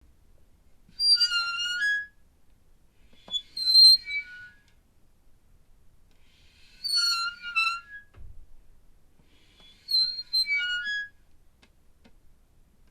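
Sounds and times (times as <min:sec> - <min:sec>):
squeaky metal hinge creaking: 0:01.0 - 0:02.1, 0:03.2 - 0:04.7, 0:06.6 - 0:08.1, 0:09.6 - 0:11.2.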